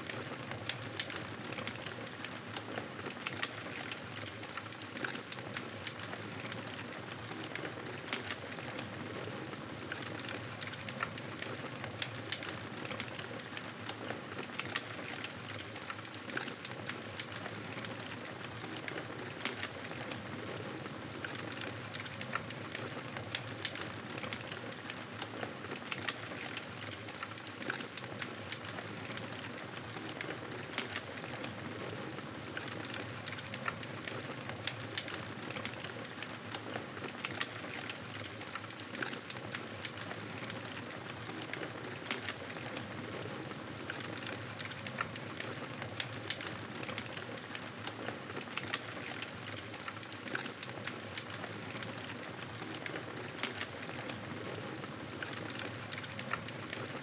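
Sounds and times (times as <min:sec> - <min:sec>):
campfire crackling and popping: 0:25.8 - 0:57.0.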